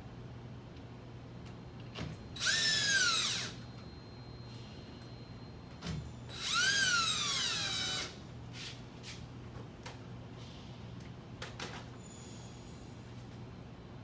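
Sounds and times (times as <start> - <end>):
power driver motor whine: 2.4 - 3.6, 6.3 - 8.2.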